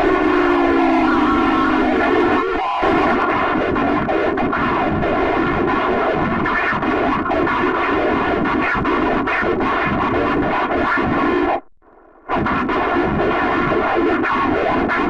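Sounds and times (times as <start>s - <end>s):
loud distorted drone: 0.0s - 4.1s.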